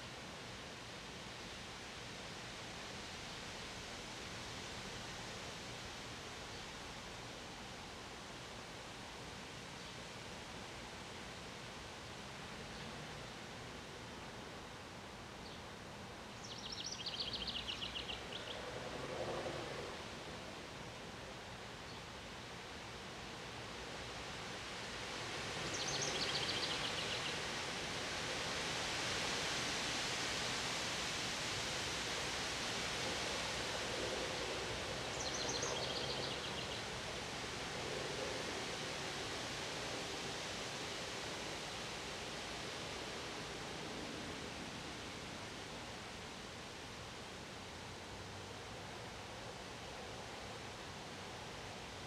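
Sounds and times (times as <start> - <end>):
wind gusting through trees: 10.6 - 52.0.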